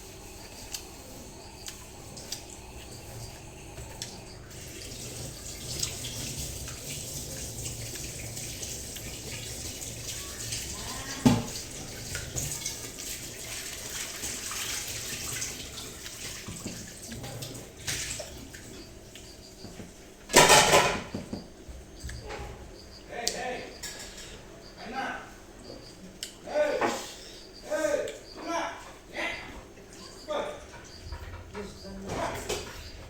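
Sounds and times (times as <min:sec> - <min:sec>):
water running from a tap: 0:00.0 - 0:19.0.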